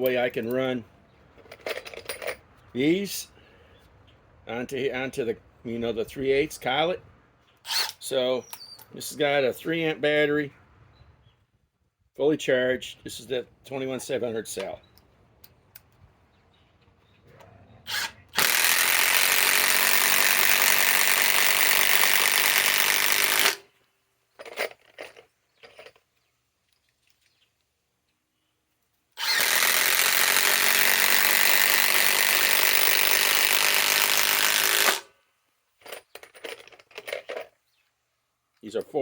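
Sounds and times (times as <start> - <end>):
impact wrench hammering: 17.9 - 23.6.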